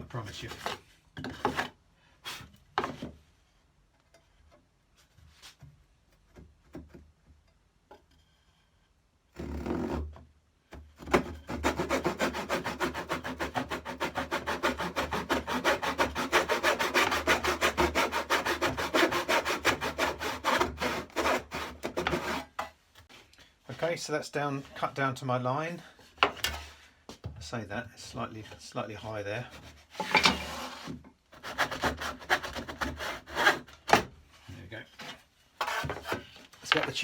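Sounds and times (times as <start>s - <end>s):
hand saw cutting wood: 11.0s - 22.6s, 29.5s - 34.1s, 35.6s - 37.0s.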